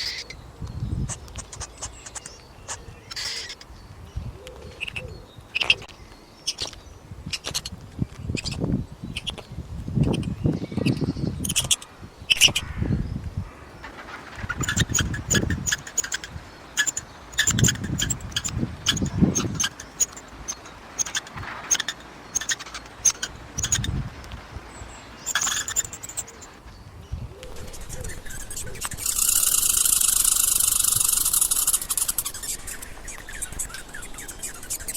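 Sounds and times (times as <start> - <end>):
animal chirps and clicks: 0.0 - 12.9, 13.8 - 34.9
low rumbling noise: 11.1 - 19.6.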